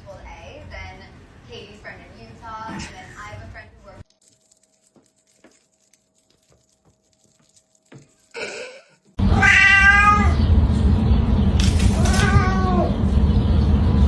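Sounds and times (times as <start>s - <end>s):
low rumble: 9.2s - 14.0s
cat meowing: 9.3s - 10.4s, 11.9s - 13.0s.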